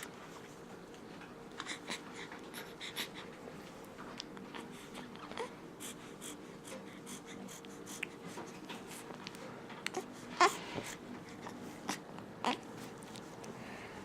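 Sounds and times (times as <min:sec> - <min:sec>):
baby whimpering cries: 0:09.9 - 0:10.6.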